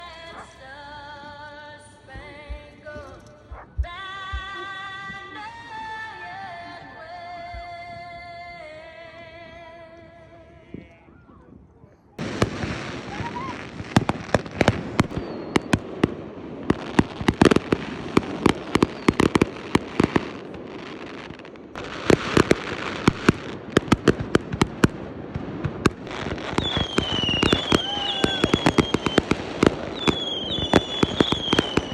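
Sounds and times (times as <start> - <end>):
fireworks popping and banging: 2.1 - 5.8, 12.2 - 31.9
fireworks whistling: 12.2 - 31.9.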